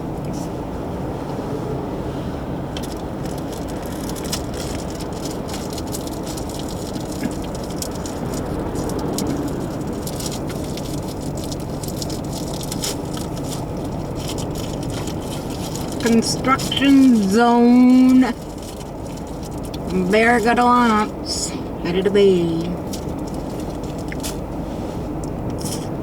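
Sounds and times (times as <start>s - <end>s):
car road and tyre noise: 0.0s - 26.0s
light ticks and rattles: 2.8s - 20.5s, 22.8s - 24.5s.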